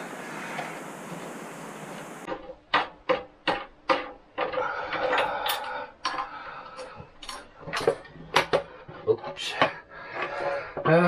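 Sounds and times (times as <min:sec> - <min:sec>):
steady hiss: 0:00.0 - 0:02.3.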